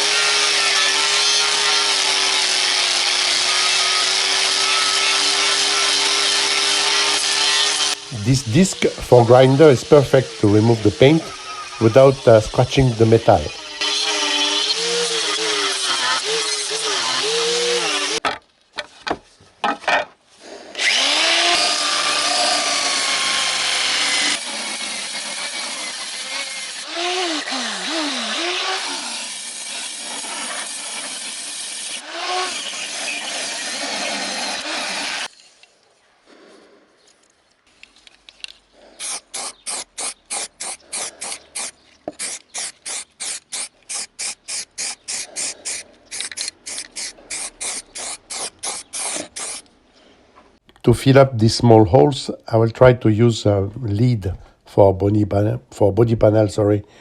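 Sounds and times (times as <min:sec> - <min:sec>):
angle grinder on sheet metal: 0:00.0 - 0:18.2, 0:20.7 - 0:35.4, 0:38.9 - 0:49.7.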